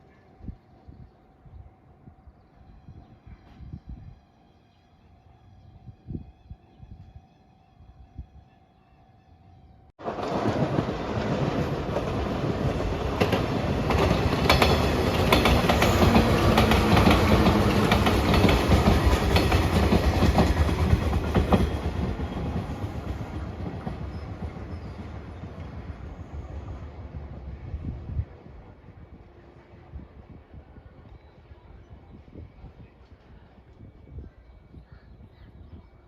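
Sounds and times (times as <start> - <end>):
train wheels clacking over rail joints: 10.1 - 24.0.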